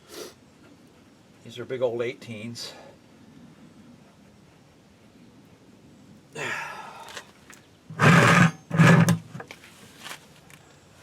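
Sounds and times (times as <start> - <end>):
power tool humming: 7.9 - 9.2.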